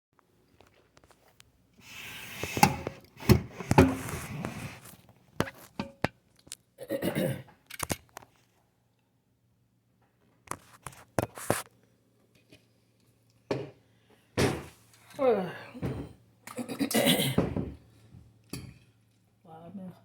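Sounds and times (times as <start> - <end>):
rustling and scraping: 0.5 - 6.5, 10.4 - 11.7.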